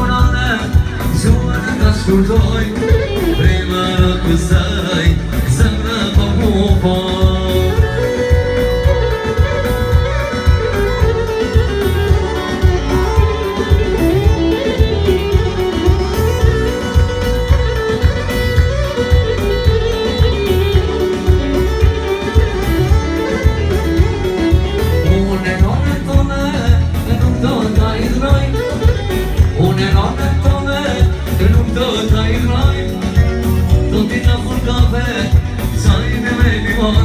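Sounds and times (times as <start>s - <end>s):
band playing dance music: 0.0s - 37.0s.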